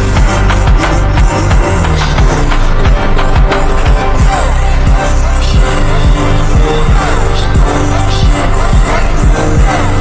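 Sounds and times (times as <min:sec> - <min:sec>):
hip hop beat with heavy bass: 0:00.0 - 0:10.0.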